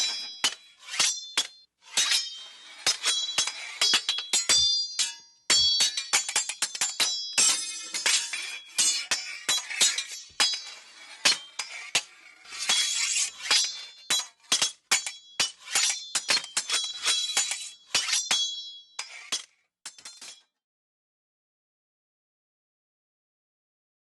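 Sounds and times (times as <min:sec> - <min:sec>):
sword blades clashing: 0:00.0 - 0:20.4.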